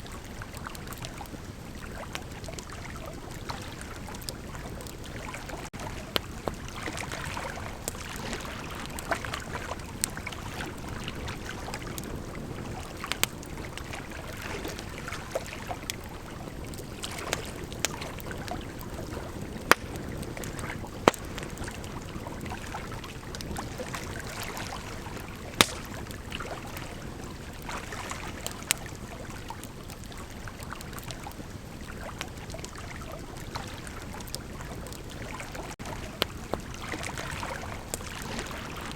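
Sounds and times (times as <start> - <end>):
fire crackles and pops: 0.3 - 38.9
bonfire hissing: 25.0 - 26.4.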